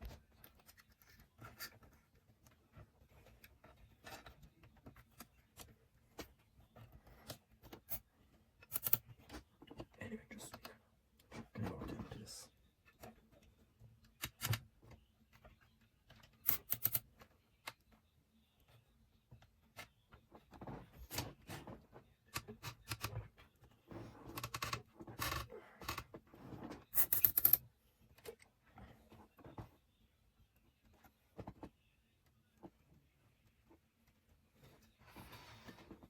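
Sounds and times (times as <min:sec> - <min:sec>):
computer parts clicking: 0:16.4 - 0:17.0.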